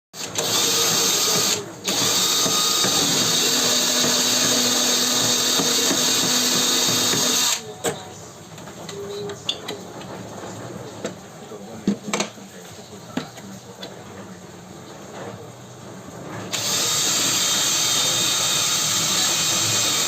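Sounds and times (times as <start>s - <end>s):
power tool motor running: 0.2s - 7.6s, 16.5s - 20.0s.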